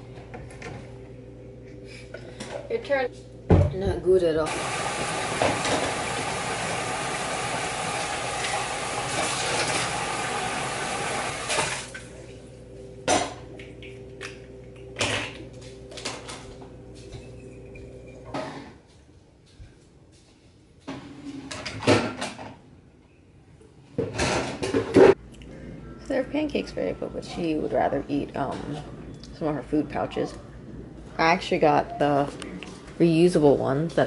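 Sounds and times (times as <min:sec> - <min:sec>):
tap water running: 0:04.2 - 0:12.3.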